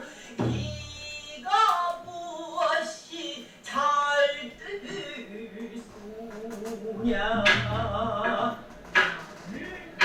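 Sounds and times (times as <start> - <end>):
person singing: 0.0 - 10.0.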